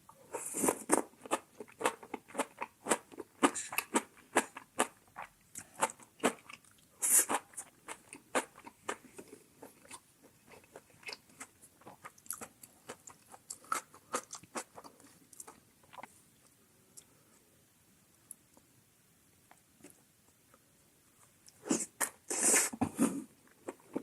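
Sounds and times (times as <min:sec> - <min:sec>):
chewing crunchy food: 0:00.7 - 0:16.1.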